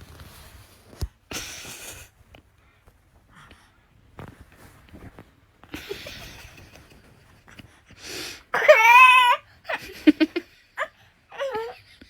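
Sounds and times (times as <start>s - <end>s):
child wailing: 8.6s - 9.4s.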